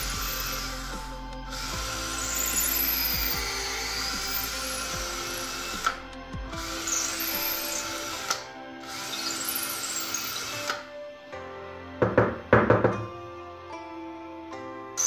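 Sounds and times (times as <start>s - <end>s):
electric drill boring through wood: 0.0s - 11.0s
background music: 0.0s - 15.0s.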